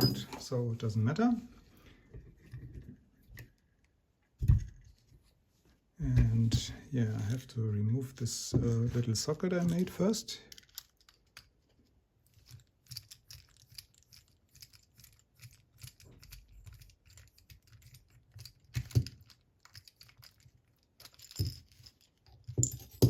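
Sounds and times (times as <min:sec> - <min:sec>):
small metal parts clicking: 0:10.5 - 0:23.0.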